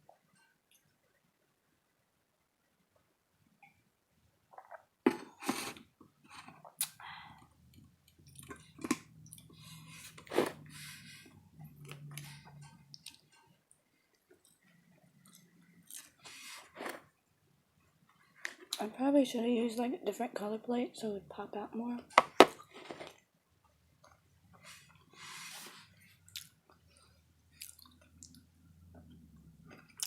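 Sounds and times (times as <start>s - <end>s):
chewing and mouth sounds: 26.3s - 27.0s, 27.6s - 28.4s.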